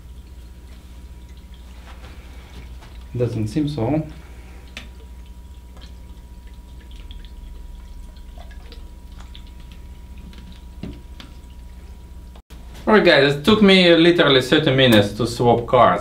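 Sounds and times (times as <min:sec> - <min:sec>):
coolant trickling and dripping: 0:00.0 - 0:12.4
water pump humming: 0:00.0 - 0:16.0.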